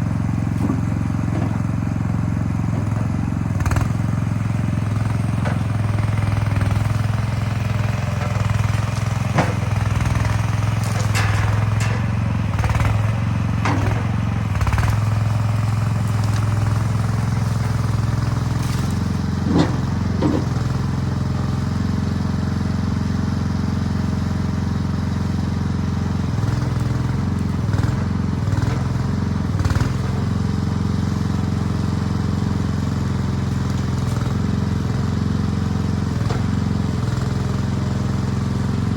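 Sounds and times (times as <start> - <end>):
skid steer engine running: 0.0 - 38.9
sharp metal clanks and knocks: 8.2 - 13.0, 13.6 - 14.2, 19.4 - 20.8.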